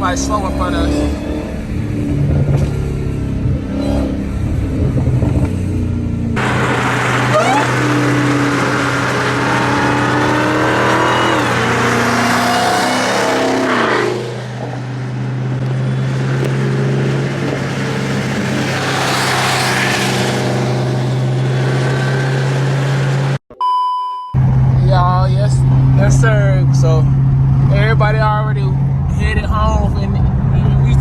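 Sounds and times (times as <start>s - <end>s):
car engine accelerating: 0.0s - 23.4s, 24.4s - 31.0s
road noise rushing: 0.0s - 23.4s, 24.4s - 31.0s.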